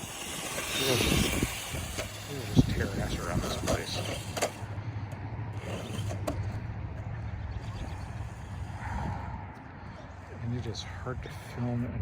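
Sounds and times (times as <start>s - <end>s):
rc truck motor whirring: 0.0s - 8.9s.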